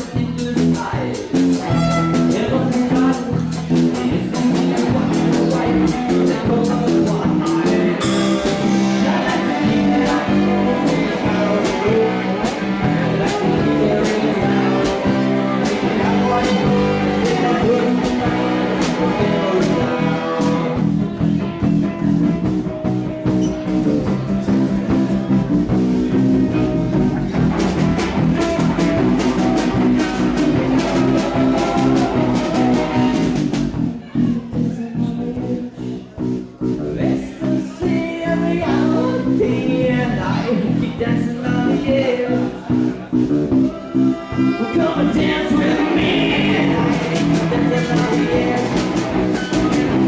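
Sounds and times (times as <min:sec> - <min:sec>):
bass: 0:00.0 - 0:50.0
guitar: 0:00.0 - 0:50.0
drum beat: 0:27.3 - 0:33.8, 0:45.3 - 0:50.0.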